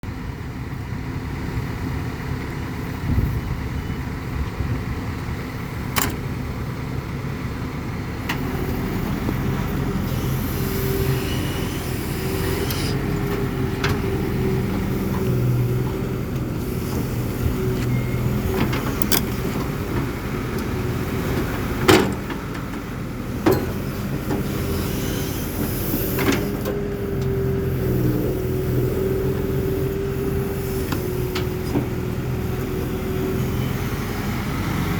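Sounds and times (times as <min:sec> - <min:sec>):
excavator engine hum: 0:00.0 - 0:34.9
hydraulic whine: 0:08.2 - 0:20.8, 0:23.5 - 0:34.9.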